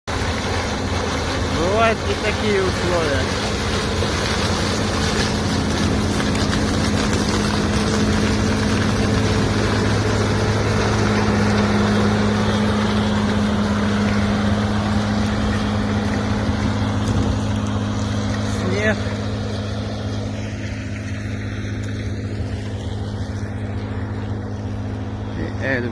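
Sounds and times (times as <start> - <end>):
combine harvester running: 0.0 - 25.9.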